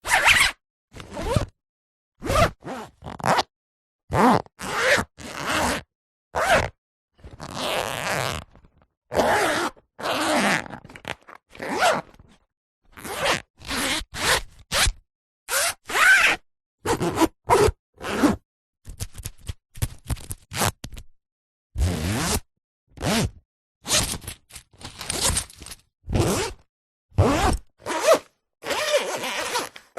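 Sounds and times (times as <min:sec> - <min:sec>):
zipper zipping: 0:00.1 - 0:01.6, 0:02.2 - 0:03.5, 0:04.1 - 0:12.3, 0:13.0 - 0:18.4, 0:21.8 - 0:24.1, 0:25.0 - 0:29.9.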